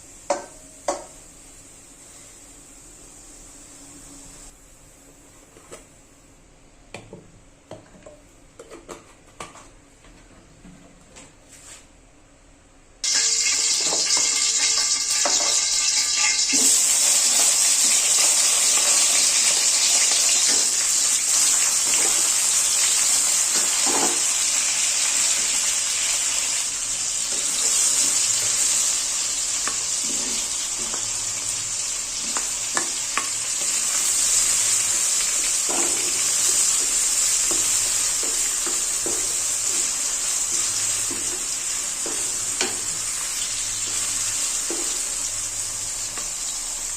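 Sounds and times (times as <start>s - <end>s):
food sizzling in hot oil: 13.0s - 46.9s.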